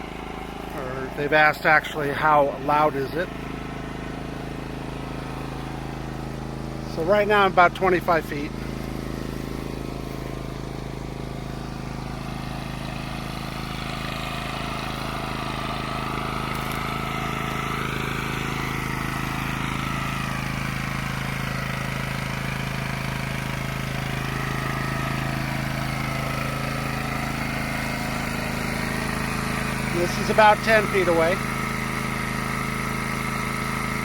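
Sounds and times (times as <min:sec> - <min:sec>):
generator running under load: 0:00.0 - 0:34.0.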